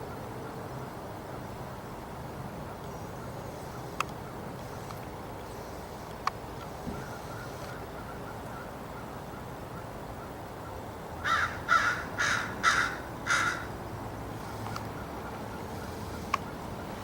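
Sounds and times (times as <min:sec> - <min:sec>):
crow cawing: 0:11.2 - 0:13.7.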